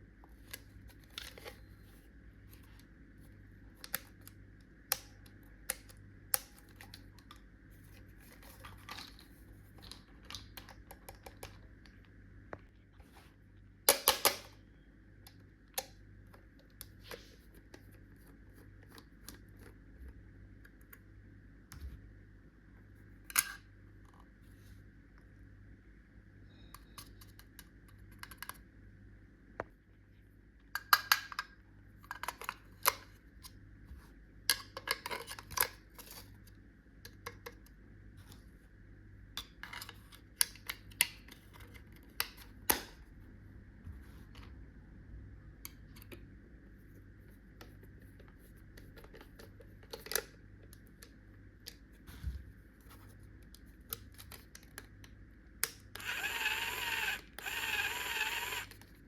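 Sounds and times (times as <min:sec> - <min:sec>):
toy electric drill whine: 0:56.0 - 0:58.8.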